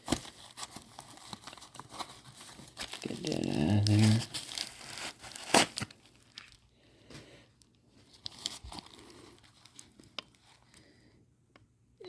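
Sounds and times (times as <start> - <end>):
packaging crinkling: 0.0 - 6.7, 8.0 - 10.8.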